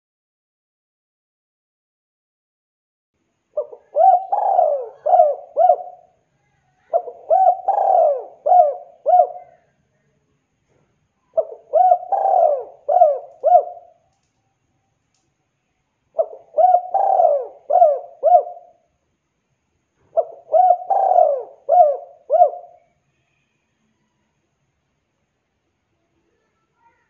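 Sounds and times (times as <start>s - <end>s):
dove cooing: 3.6s - 6.2s, 6.8s - 9.7s, 11.3s - 14.0s, 16.2s - 18.8s, 20.0s - 22.9s.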